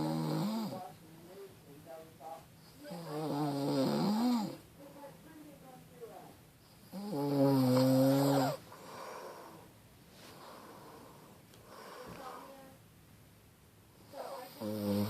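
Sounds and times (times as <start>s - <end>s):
person snoring: 0.0s - 0.8s, 2.9s - 4.6s, 6.9s - 9.6s, 14.6s - 15.0s
quiet breathing: 6.6s - 12.8s.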